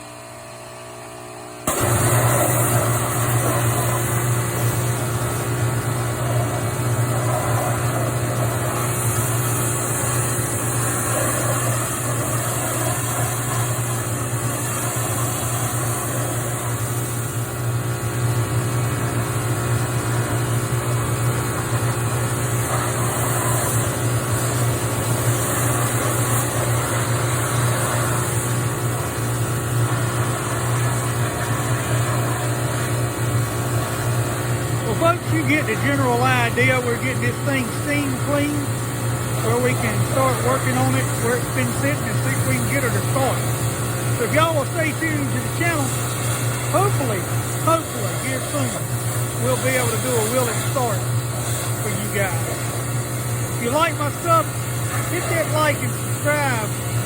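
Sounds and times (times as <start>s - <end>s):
pressure washer motor hum: 0.0s - 57.0s
water jet hissing: 1.7s - 57.0s.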